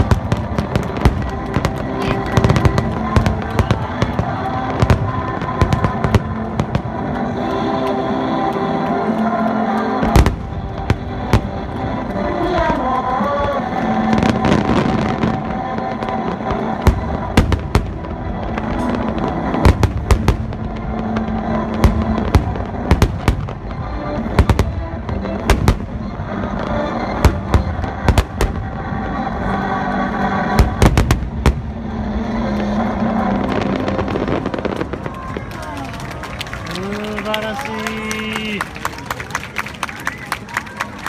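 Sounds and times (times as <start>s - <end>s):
crackle and rumble: 0.0s - 36.7s
music playing: 0.0s - 41.0s.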